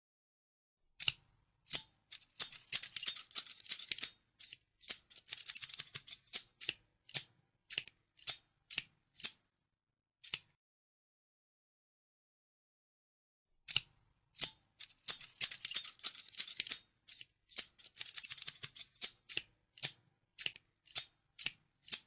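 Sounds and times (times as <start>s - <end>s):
scissors snipping: 1.0s - 9.4s, 10.2s - 10.5s, 13.7s - 22.0s.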